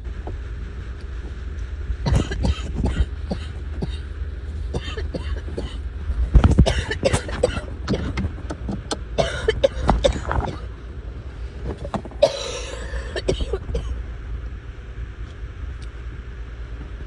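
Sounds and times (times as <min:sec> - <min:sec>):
steady low hum: 0:00.0 - 0:17.0
congested coughing: 0:02.1 - 0:05.9, 0:06.6 - 0:08.2, 0:09.2 - 0:10.7, 0:12.2 - 0:13.9.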